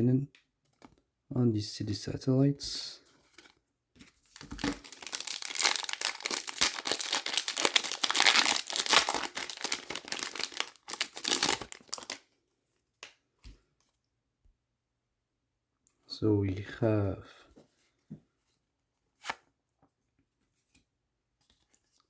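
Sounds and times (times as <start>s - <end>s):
wrapper tearing and crinkling: 4.3s - 12.2s.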